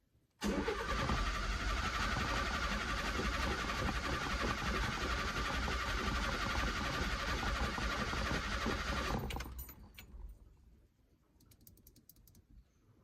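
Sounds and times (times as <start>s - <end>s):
starter motor cranking engine: 0.4s - 9.6s
faint clicks: 11.3s - 12.6s.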